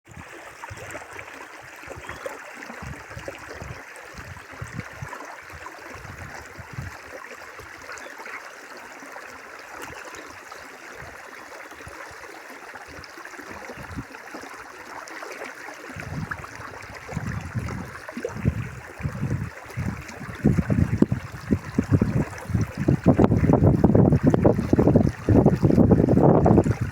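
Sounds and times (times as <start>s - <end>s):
river water babbling: 0.1s - 26.9s
wind buffeting microphone: 2.8s - 7.1s, 13.7s - 14.1s, 16.0s - 26.9s.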